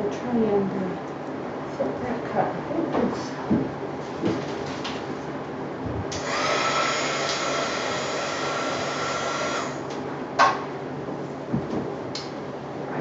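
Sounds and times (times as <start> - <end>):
electric blower whirring: 6.1 - 10.0.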